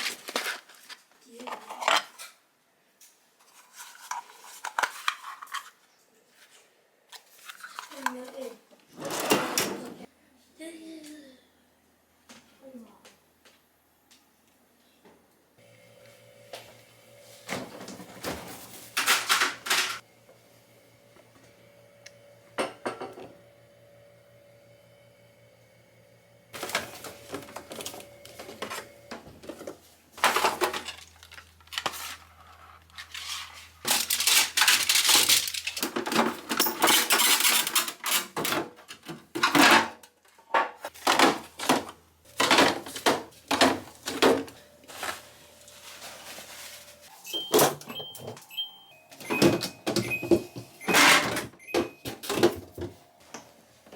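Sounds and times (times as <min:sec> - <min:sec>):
dishes clinking and knocking: 0:22.6 - 0:23.4.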